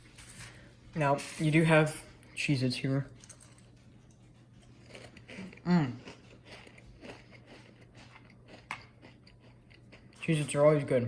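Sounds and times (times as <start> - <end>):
crunching and chewing crackers: 3.8 - 11.0.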